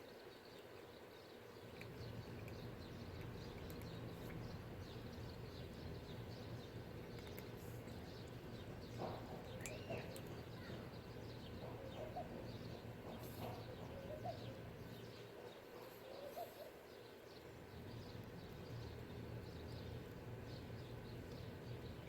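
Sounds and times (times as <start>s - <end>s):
faint background noise: 0.0s - 22.0s
light ticks: 1.7s - 4.6s.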